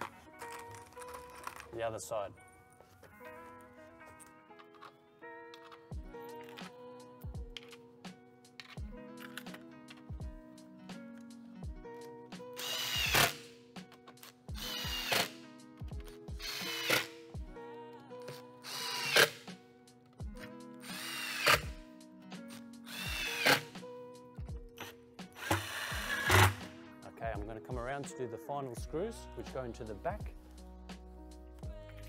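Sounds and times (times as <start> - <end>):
background music: 0.0 - 32.0
cordless drill driving screws: 12.6 - 13.4, 14.6 - 15.4, 16.4 - 17.2, 18.6 - 19.4, 20.8 - 21.7, 22.9 - 23.7, 25.4 - 26.6.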